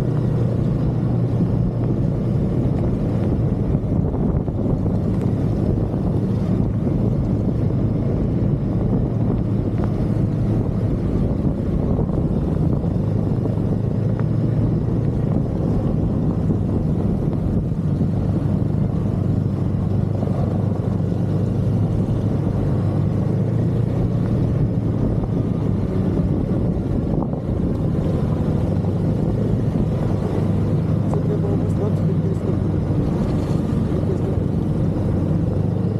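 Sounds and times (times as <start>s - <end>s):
snowmobile engine droning: 0.0s - 35.9s.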